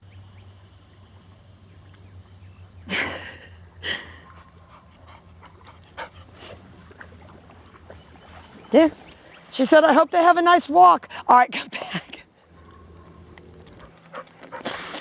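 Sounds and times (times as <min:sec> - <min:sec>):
low steady hum: 0:00.0 - 0:15.0.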